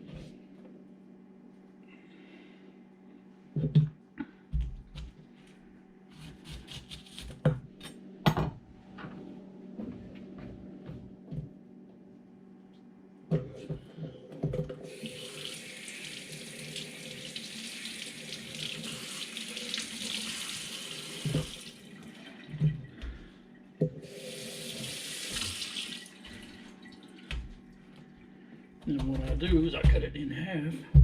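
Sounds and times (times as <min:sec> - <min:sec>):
tap running into sink: 0:21.1 - 0:21.7.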